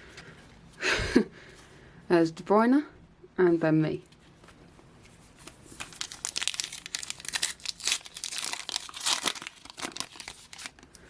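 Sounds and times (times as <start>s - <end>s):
wrapper tearing and crinkling: 5.5s - 11.0s.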